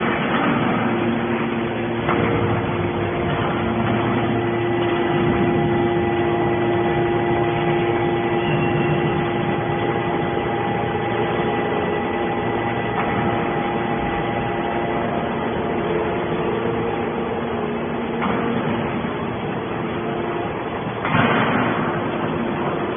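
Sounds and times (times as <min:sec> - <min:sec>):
hydraulic power unit humming: 0:00.0 - 0:22.9
mechanical knock: 0:18.2 - 0:18.9.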